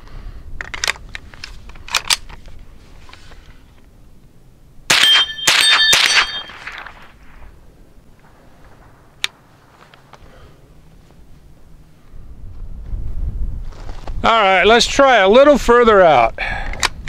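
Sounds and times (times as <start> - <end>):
ringing metallic strikes: 4.9 - 6.7.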